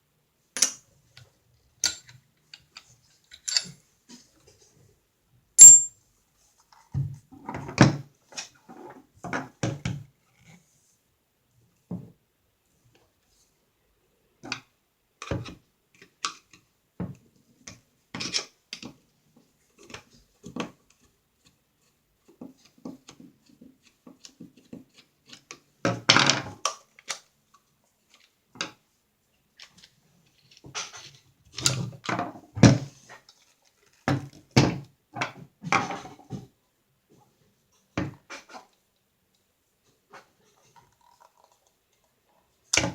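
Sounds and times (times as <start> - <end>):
metal parts clicking and knocking: 3.3 - 3.7, 5.6 - 5.9.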